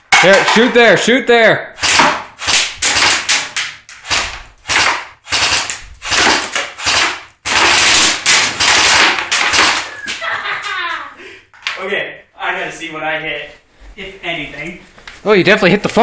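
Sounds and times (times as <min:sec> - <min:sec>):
airsoft machine gun bursts: 0:01.8 - 0:09.9.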